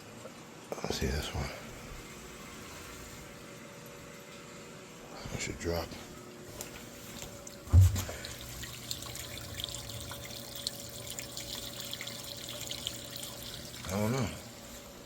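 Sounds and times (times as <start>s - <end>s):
water trickling and dripping: 6.5s - 15.0s
dull thump: 7.7s - 8.2s.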